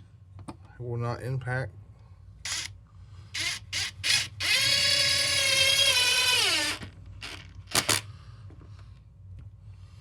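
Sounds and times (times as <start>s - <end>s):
impact driver whirring: 2.5s - 2.7s, 3.4s - 8.1s.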